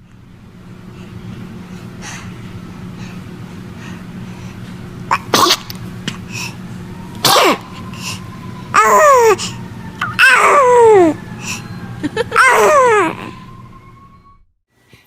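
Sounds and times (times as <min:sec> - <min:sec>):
steady low hum: 0:00.0 - 0:14.5
baby sneezing: 0:05.1 - 0:05.7, 0:07.2 - 0:07.6.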